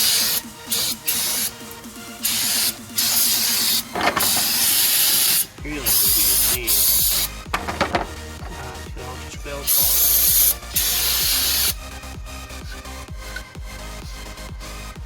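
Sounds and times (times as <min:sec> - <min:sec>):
aerosol spray hissing: 0:00.0 - 0:01.5, 0:02.2 - 0:03.8.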